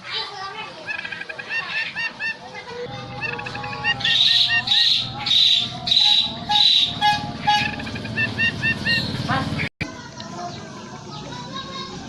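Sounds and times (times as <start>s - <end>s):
loud harsh bird notes: 0.0s - 9.7s
bird chirping song: 0.1s - 12.0s
rattling bird trill: 0.8s - 9.7s.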